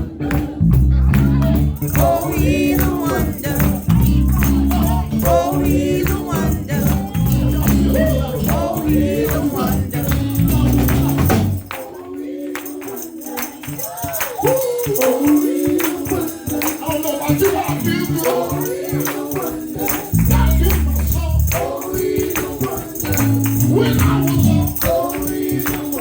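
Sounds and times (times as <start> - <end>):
heavy bass line: 0.0 - 11.7, 20.1 - 21.6, 23.1 - 24.9
band playing: 0.0 - 11.8, 16.0 - 26.0
gospel voices singing: 0.0 - 26.0
tambourine: 0.4 - 26.0.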